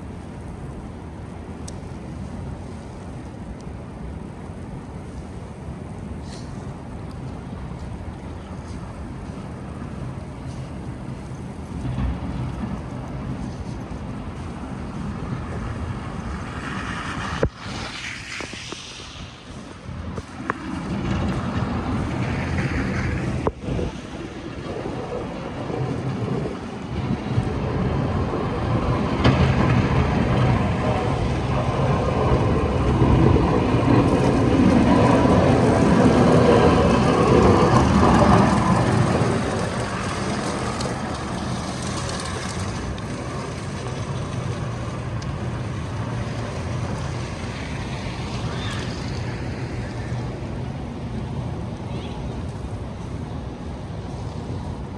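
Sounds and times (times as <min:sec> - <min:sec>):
street traffic noise: 0:00.0 - 0:54.9
vehicle passing by: 0:11.8 - 0:51.2.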